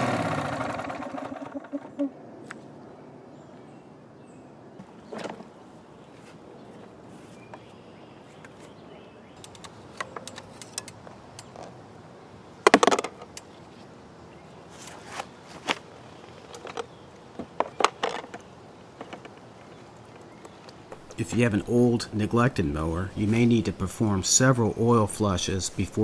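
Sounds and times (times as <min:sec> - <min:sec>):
sharp clicks and knocks: 0:09.4 - 0:11.7.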